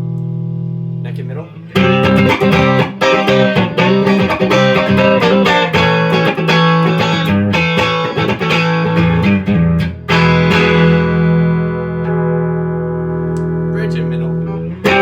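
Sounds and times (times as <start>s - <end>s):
clean electric guitar notes: 1.7s - 15.0s.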